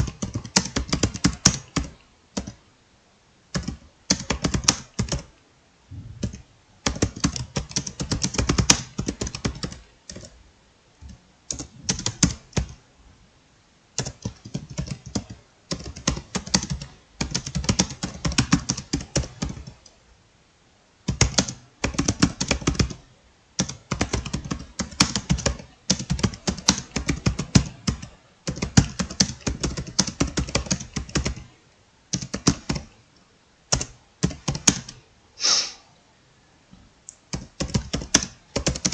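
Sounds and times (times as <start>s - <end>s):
fast typing on keyboard: 0.0s - 2.6s, 3.5s - 5.3s, 6.2s - 10.4s, 11.0s - 12.8s, 14.0s - 19.8s, 21.1s - 23.0s, 23.6s - 31.5s, 32.1s - 33.0s, 33.7s - 35.0s, 37.3s - 38.9s.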